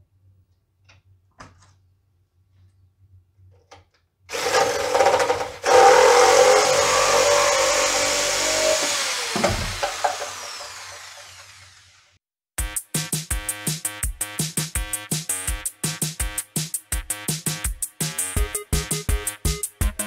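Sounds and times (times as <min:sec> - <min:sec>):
power tool motor winding down: 0:04.3 - 0:12.2.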